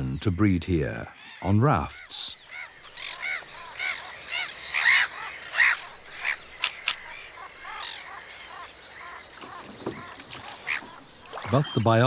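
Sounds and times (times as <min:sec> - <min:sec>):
waterbirds calling: 0:01.2 - 0:12.0
sharp clicks: 0:06.6 - 0:07.0.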